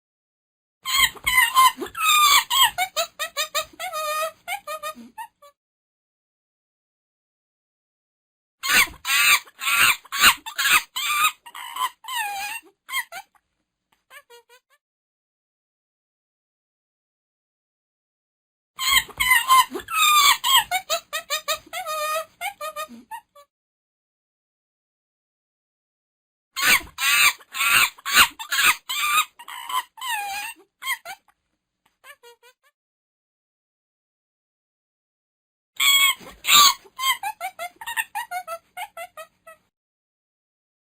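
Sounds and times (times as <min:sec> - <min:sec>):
monkey harsh calls: 0:08.6 - 0:13.2, 0:26.6 - 0:31.2.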